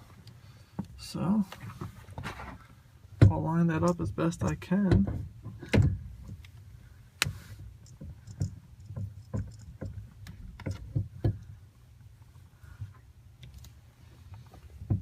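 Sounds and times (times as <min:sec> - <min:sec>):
steering wheel knocks and clicks: 0:03.2 - 0:06.6, 0:07.2 - 0:11.6, 0:14.4 - 0:15.0.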